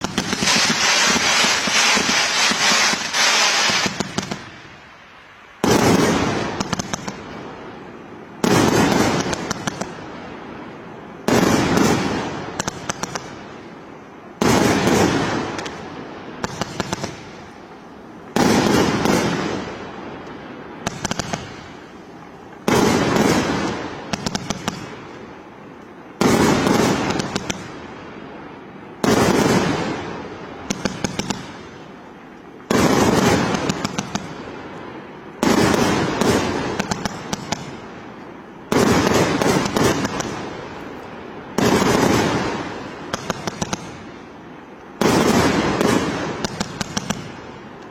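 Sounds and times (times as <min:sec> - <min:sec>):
quick firework pops: 0:00.0 - 0:04.5, 0:20.9 - 0:21.6, 0:45.0 - 0:47.9
firework bangs: 0:00.0 - 0:04.9, 0:05.6 - 0:25.5, 0:26.1 - 0:47.9
fireworks crackling: 0:00.0 - 0:47.9.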